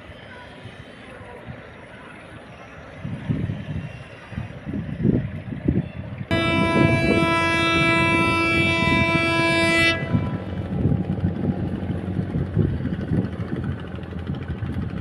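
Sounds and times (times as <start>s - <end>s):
barge engine rumble: 0.0s - 15.0s
ship horn blast: 6.3s - 11.0s.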